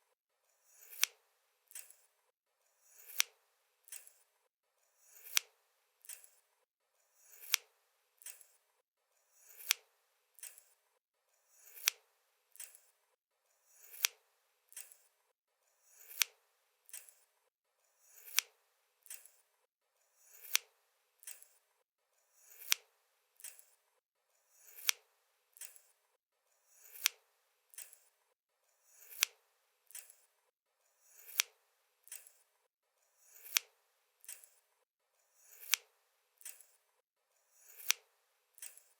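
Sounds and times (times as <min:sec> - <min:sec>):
scissors snipping: 0:00.8 - 0:02.1, 0:03.0 - 0:04.2, 0:05.2 - 0:06.4, 0:07.3 - 0:08.6, 0:09.5 - 0:10.8, 0:11.6 - 0:12.9, 0:13.8 - 0:15.1, 0:16.0 - 0:17.2, 0:18.2 - 0:19.4, 0:20.3 - 0:21.6, 0:22.5 - 0:23.8, 0:24.7 - 0:25.0, 0:25.6 - 0:25.9, 0:26.8 - 0:28.1, 0:29.0 - 0:30.2, 0:31.2 - 0:32.4, 0:33.4 - 0:34.6, 0:35.5 - 0:36.8, 0:37.7 - 0:38.0, 0:38.6 - 0:38.9.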